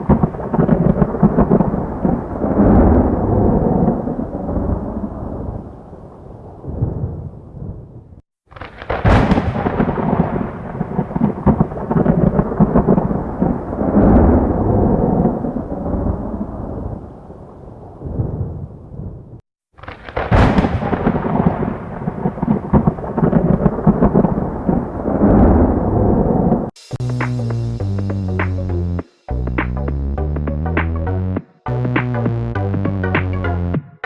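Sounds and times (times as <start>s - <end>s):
thunder rumbling: 0.0s - 26.7s.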